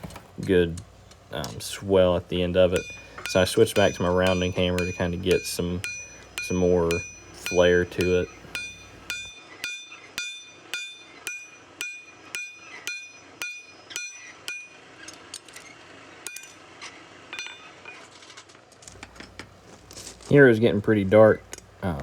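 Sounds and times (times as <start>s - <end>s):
ringing anvil tone: 2.5s - 14.9s, 16.3s - 16.6s, 17.3s - 18.0s
hammer striking anvil: 2.6s - 14.9s, 16.3s - 16.6s, 17.4s - 17.8s.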